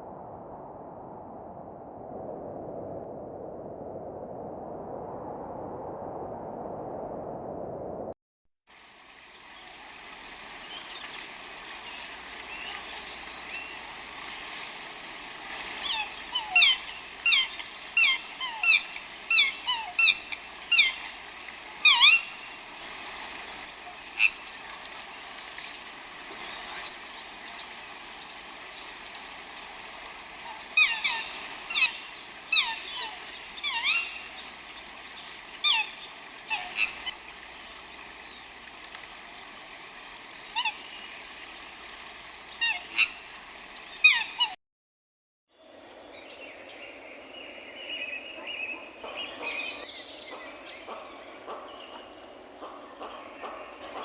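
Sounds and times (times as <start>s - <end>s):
background hiss: 8.8s - 44.0s, 45.6s - 54.0s
birds with downward-sliding calls: 30.3s - 37.2s
soft chirping birdsong: 45.9s - 54.0s.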